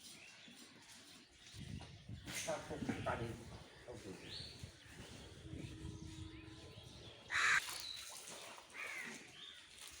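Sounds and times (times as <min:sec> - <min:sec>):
crow cawing: 0:07.3 - 0:07.6.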